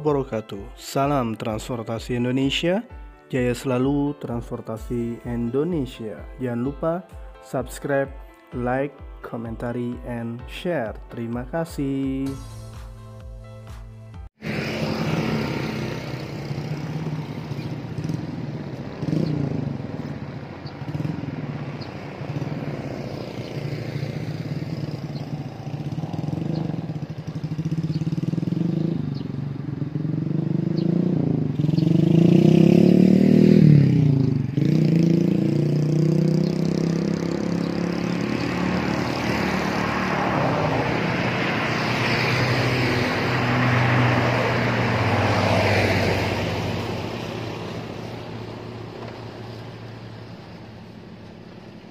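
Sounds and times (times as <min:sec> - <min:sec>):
heavy vehicles driving past: 0:14.4 - 0:51.9.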